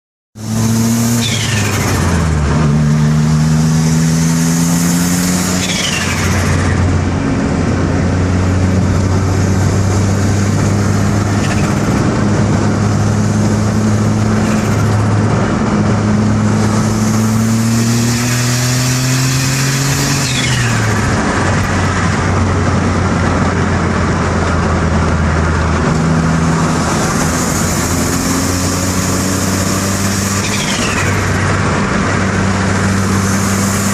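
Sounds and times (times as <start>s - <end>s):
car engine revving: 0.4s - 33.9s
turbo whistle and flutter: 30.3s - 31.2s.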